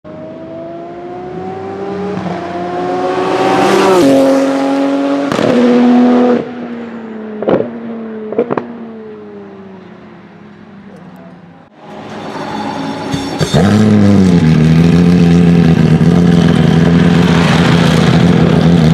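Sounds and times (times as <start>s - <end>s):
car engine accelerating hard: 13.6s - 18.9s.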